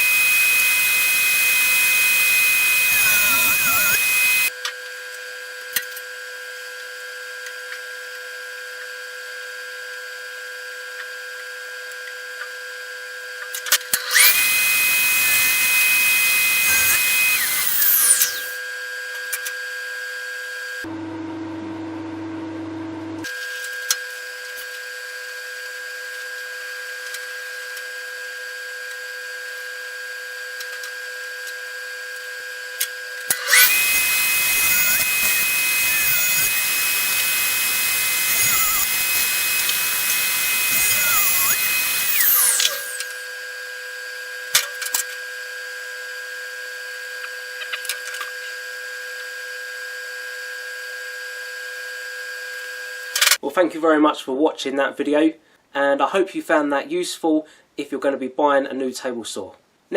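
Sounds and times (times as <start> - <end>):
table saw cutting wood: 0.0 - 4.6, 13.5 - 20.9, 23.2 - 53.4.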